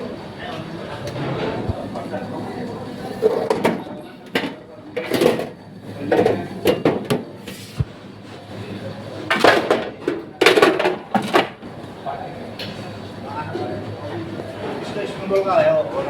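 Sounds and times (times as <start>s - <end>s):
dishes and pots clattering: 3.3s - 7.3s.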